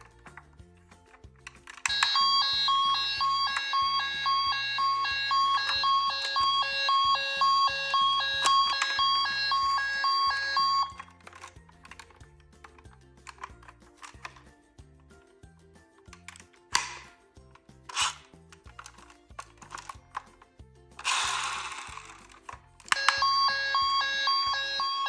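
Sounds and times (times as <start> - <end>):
toy electronic siren beeping: 1.9 - 11.1, 22.9 - 25.0.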